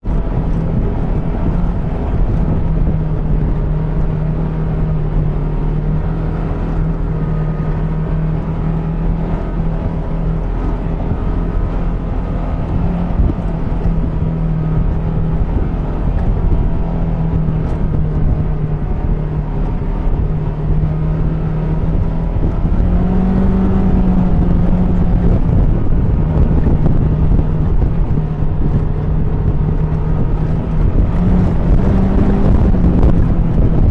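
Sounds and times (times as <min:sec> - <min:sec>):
atv engine running: 0:00.0 - 0:33.9.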